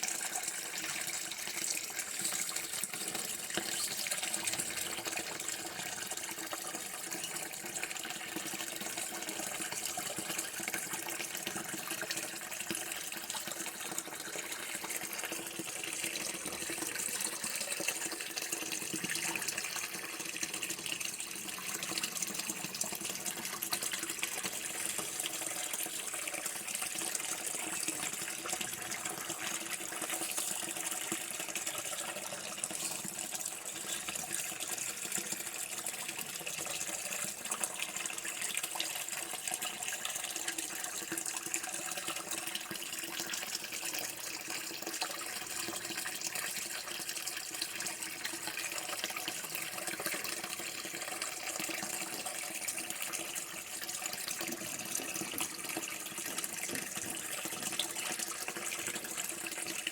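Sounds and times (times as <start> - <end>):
running water: 0.0 - 44.2.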